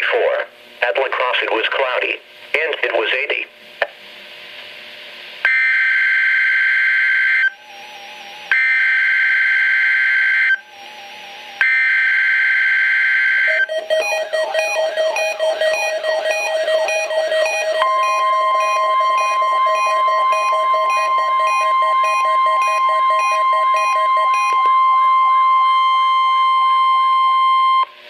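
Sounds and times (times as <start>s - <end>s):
steady alarm tone: 5.5s - 27.9s
rapid repeating beeps: 13.4s - 26.1s
second steady tone: 13.5s - 27.9s.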